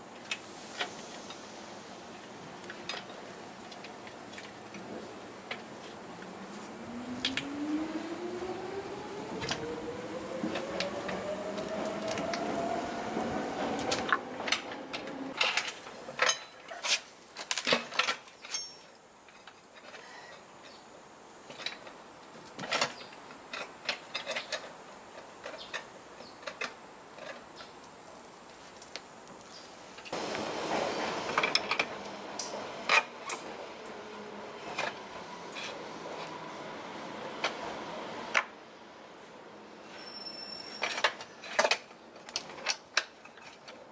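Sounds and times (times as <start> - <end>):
mechanical whine rising in pitch: 6.0 - 15.4.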